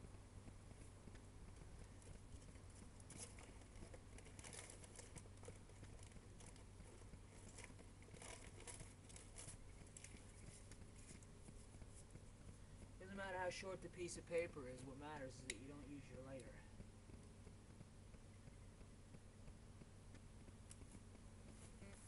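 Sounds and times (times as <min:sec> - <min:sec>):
low steady hum: 0:00.0 - 0:22.0
paper crumpling and tearing: 0:04.2 - 0:05.2.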